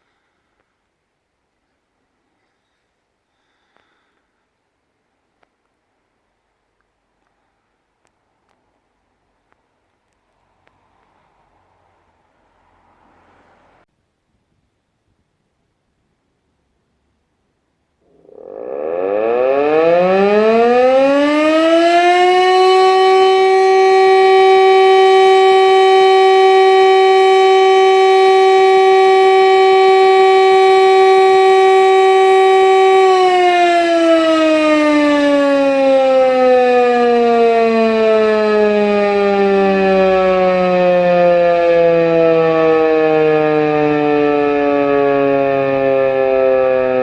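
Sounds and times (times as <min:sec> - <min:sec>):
electromechanical siren: 0:18.0 - 0:47.0.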